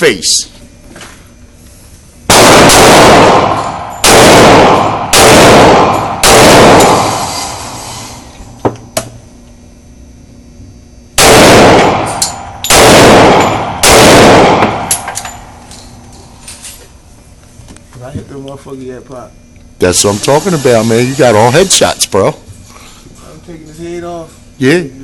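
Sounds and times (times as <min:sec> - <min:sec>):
handgun shots: 0:02.3 - 0:07.3, 0:11.2 - 0:15.3.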